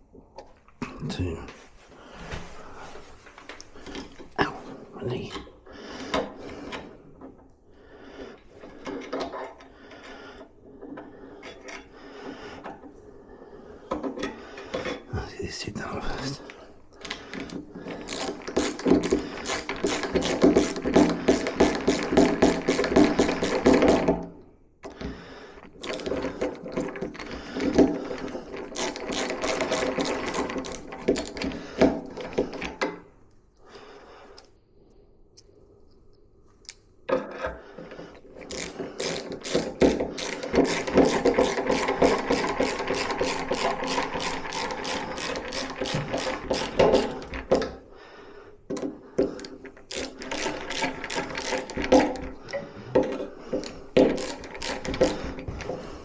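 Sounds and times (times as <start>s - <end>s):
drill driver whine and clicking: 17.4s - 24.2s, 24.9s - 32.9s, 38.2s - 47.8s, 49.3s - 55.8s.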